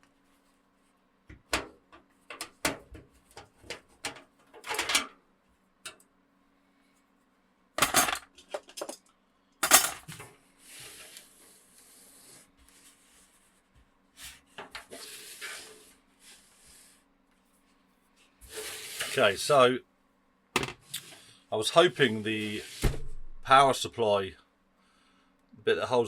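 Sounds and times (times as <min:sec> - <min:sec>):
metal parts and screws clattering: 0:04.0 - 0:05.1, 0:07.8 - 0:10.2.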